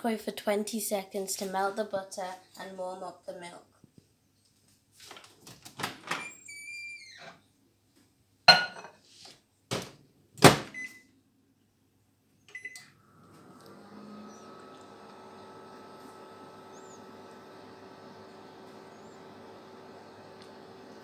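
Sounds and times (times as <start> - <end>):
microwave oven humming: 12.6 - 21.0.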